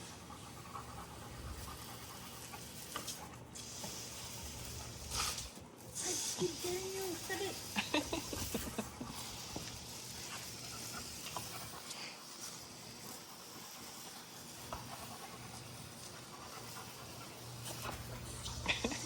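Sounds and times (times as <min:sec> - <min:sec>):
dog panting: 0:00.0 - 0:19.0
steady hiss: 0:00.0 - 0:19.0.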